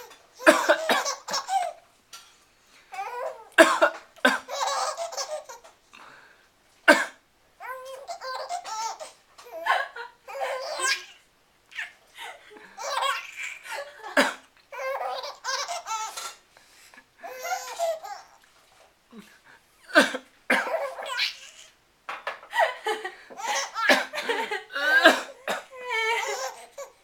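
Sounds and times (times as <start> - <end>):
girl laughing: 9.5 - 10.8
man coughing: 19.9 - 20.8, 23.9 - 25.7.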